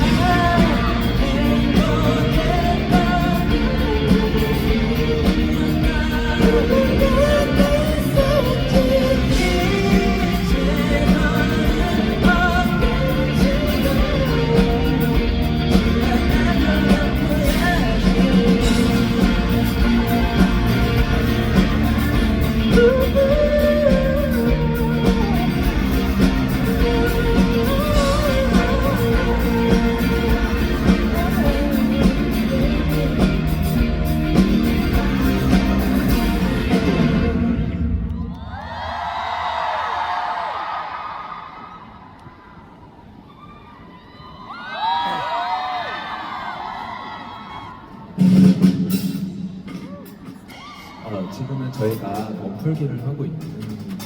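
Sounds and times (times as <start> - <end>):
lead singer singing: 0.0 - 37.8
bass guitar: 0.0 - 38.2
electric guitar: 0.0 - 38.4
drums: 0.0 - 54.0.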